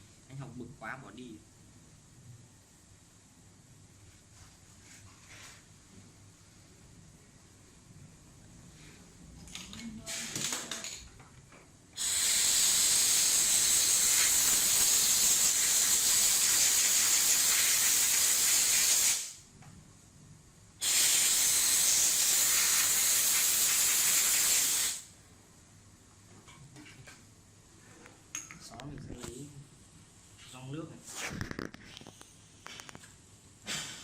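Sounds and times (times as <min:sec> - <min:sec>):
pressurised jet hissing: 0:12.0 - 0:19.4, 0:20.8 - 0:25.1.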